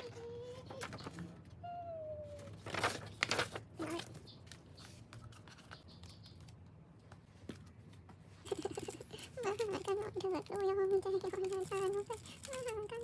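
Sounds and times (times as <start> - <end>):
packaging crinkling and clicking: 2.6 - 4.6.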